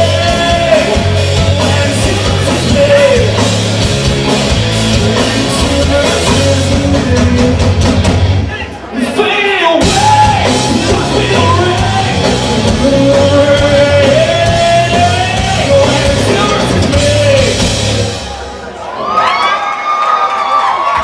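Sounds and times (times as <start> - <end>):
lead singer singing: 0.0 - 3.7, 4.7 - 8.2, 8.9 - 18.0
live rock band playing: 0.0 - 18.8.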